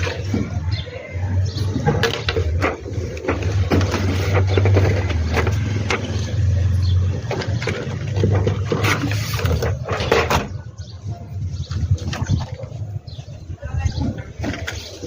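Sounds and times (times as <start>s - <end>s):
clicks and scrapes: 1.6s - 10.8s.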